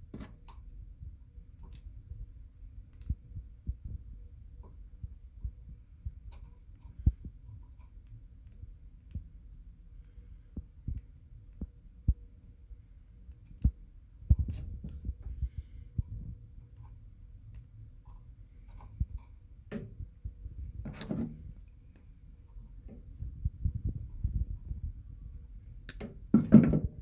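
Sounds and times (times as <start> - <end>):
low thumps and knocks: 26.0 - 27.0.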